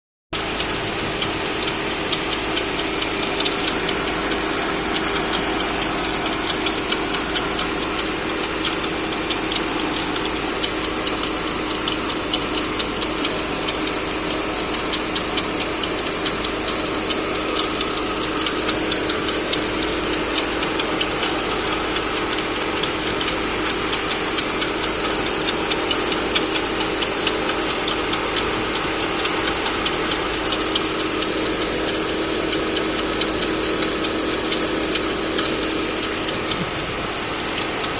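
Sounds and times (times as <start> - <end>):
engine running: 0.4 - 37.9
fast engine ticking: 0.4 - 37.9.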